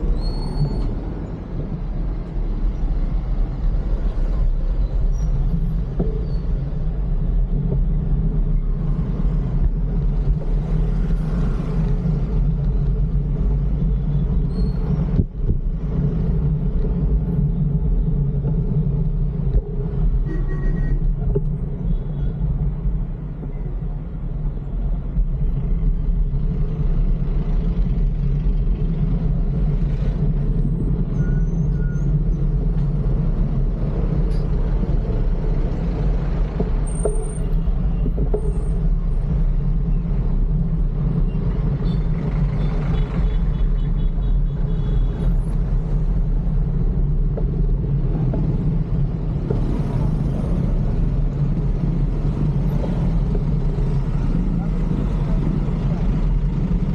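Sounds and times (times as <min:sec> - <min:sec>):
road traffic rumble: 0:00.0 - 0:56.9
truck and bus engines: 0:00.0 - 0:56.9
wind noise on microphone: 0:00.0 - 0:56.9.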